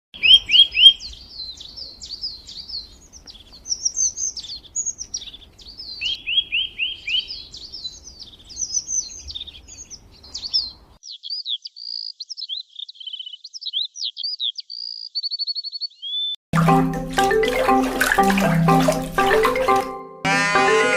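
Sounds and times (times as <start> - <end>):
songbird singing: 0.2 - 16.4.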